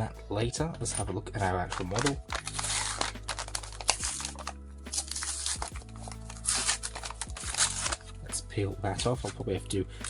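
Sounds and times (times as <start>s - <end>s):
soft background music: 0.0s - 10.0s
paper crinkling and tearing: 1.4s - 8.2s.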